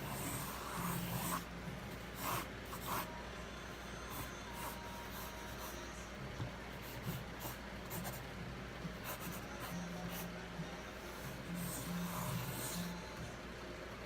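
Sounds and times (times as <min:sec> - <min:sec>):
pen scratching on paper: 0:00.0 - 0:03.1, 0:06.8 - 0:08.2, 0:09.0 - 0:10.3, 0:11.5 - 0:12.9.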